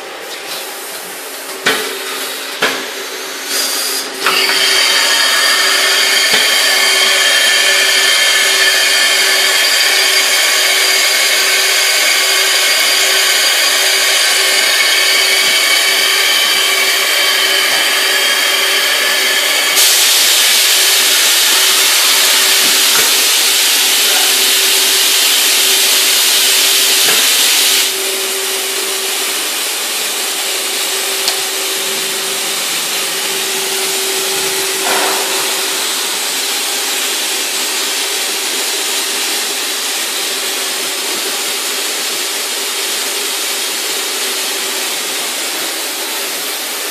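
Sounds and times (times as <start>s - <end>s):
loud hiss: 2.0s - 39.4s
machine whine: 2.8s - 41.1s.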